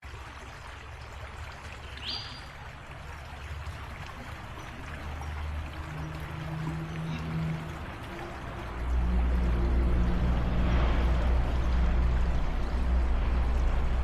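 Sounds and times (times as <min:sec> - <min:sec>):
creek water flowing: 0:00.0 - 0:14.0
bird chirp: 0:01.8 - 0:02.5
low steady hum: 0:02.3 - 0:14.0.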